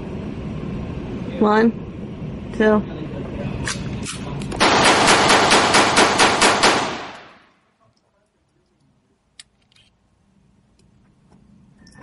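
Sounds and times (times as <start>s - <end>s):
rapid gunshots: 4.6s - 7.4s.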